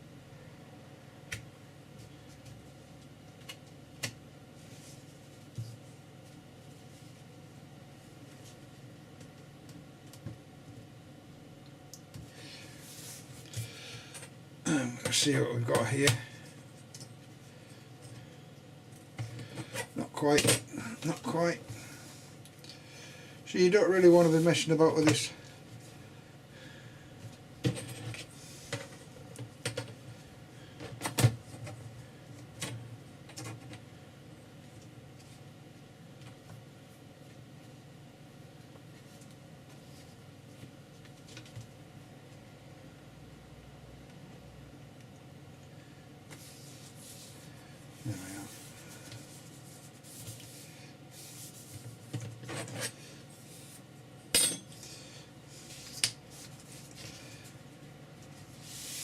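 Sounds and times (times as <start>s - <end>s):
rustling and scraping on workbench: 48.4s - 53.9s, 58.4s - 59.0s.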